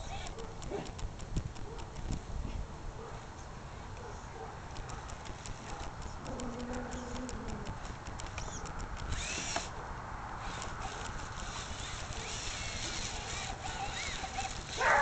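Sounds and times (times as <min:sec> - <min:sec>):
clicking and crunching: 0:04.7 - 0:09.6.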